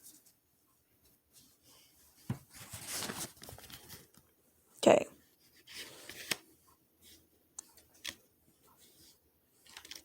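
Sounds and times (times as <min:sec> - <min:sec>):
trading cards rustling and clicking: 0:09.6 - 0:10.0.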